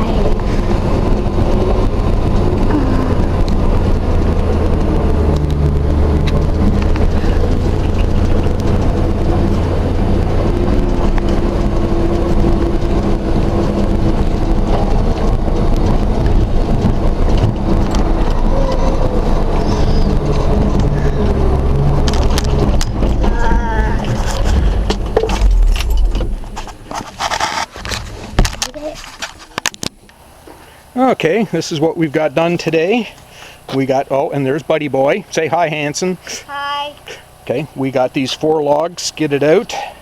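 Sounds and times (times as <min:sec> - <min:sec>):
truck engine droning: 0:00.0 - 0:28.7.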